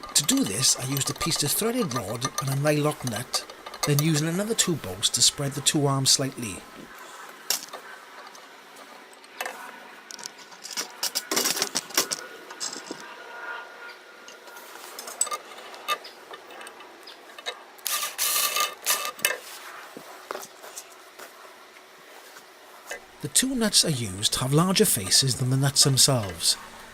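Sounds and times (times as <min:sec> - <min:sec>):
metal parts clinking and rattling: 0:00.0 - 0:05.6, 0:15.0 - 0:19.4
metal parts clattering: 0:00.0 - 0:05.8, 0:15.0 - 0:19.4.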